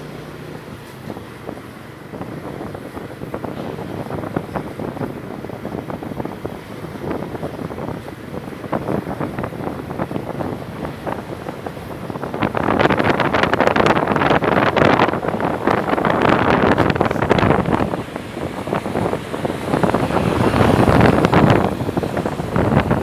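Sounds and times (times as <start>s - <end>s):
wind buffeting microphone: 0.0s - 23.0s
motorcycle engine running: 6.5s - 23.0s.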